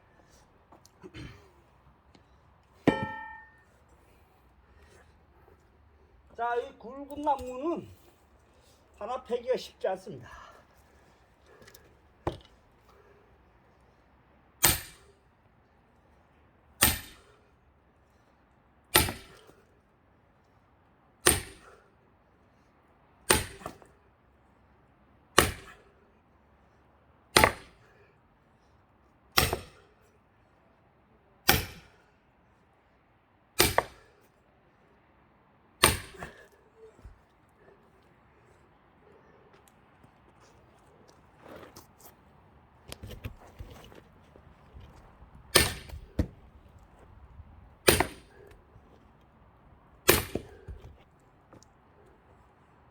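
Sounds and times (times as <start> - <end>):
axe splitting log: 2.9 - 3.6, 12.2 - 12.6, 14.6 - 15.1, 16.8 - 17.3, 18.9 - 19.5, 21.2 - 21.8, 23.3 - 23.8, 25.4 - 25.9, 27.4 - 27.9, 29.4 - 29.9, 31.5 - 32.0, 33.6 - 34.1, 35.8 - 37.2, 44.8 - 46.5, 47.8 - 48.6, 50.0 - 51.7.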